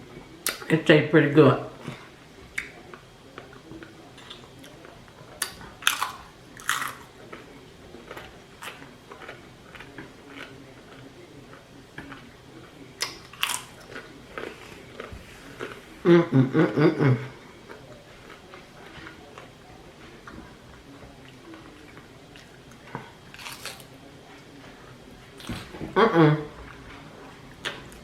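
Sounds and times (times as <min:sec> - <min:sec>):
close-up chewing and crunching: 0:02.4 - 0:16.1, 0:17.4 - 0:25.8.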